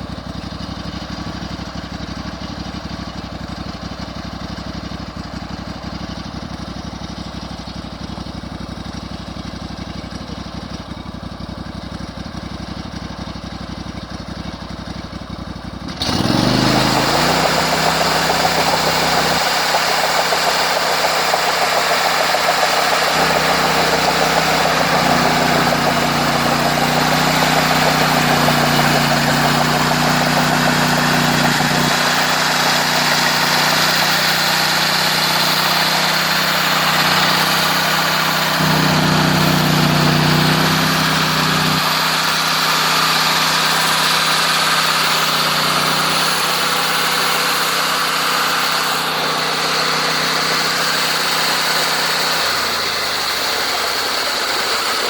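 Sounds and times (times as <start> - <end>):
sawmill engine revving up: 15.8 - 55.0.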